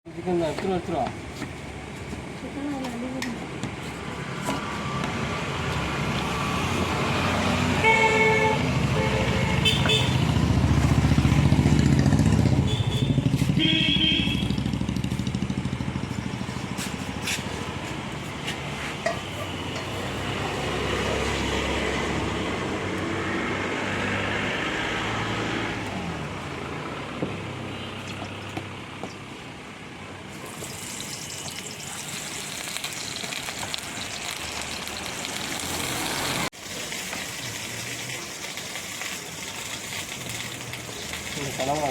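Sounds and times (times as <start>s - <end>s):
vehicle rumbling past: 4.0s - 31.6s, 32.6s - 41.9s
car horn beeps: 7.8s - 10.3s, 12.6s - 14.6s
chicken sizzling in a pan: 30.4s - 41.9s.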